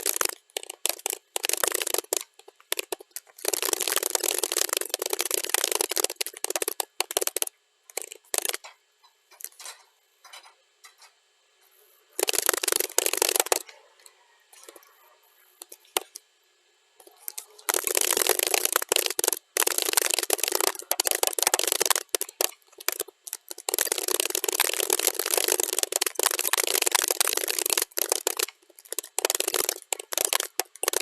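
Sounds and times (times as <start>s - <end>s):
computer keyboard typing: 0.0s - 8.7s, 12.2s - 13.7s, 17.0s - 31.0s.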